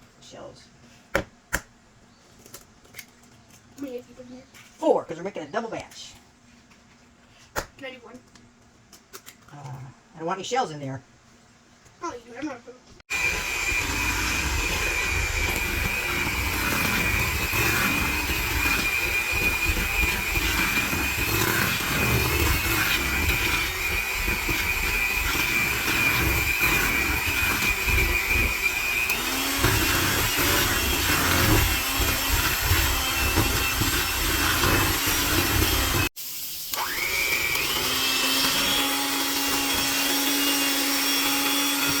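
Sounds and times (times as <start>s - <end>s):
electric hand mixer whine: 13.1s - 42.0s.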